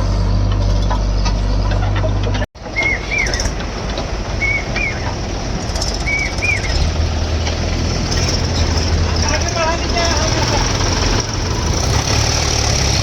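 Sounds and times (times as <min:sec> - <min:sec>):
heavy diesel engine running: 0:00.0 - 0:13.0
bird calling: 0:02.6 - 0:07.6.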